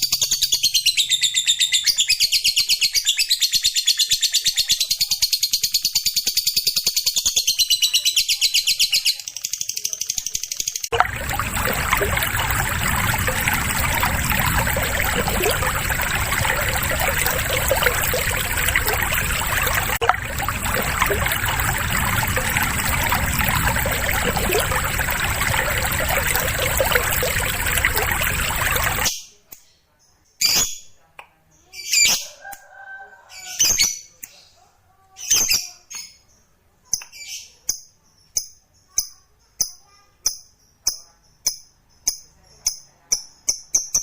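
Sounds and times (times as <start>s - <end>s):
running water: 10.9s - 29.1s.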